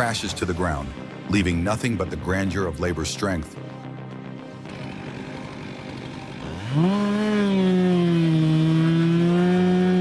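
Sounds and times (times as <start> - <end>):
chainsaw revving: 4.6 - 10.0.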